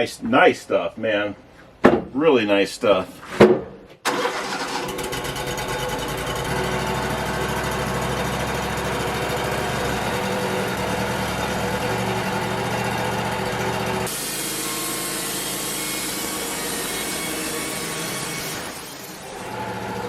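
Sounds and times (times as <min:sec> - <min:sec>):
band sawmill sawing wood: 0:04.1 - 0:20.0.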